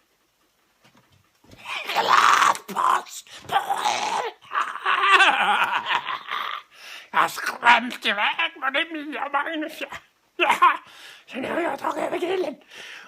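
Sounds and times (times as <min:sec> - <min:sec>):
person screaming: 0:01.6 - 0:08.6.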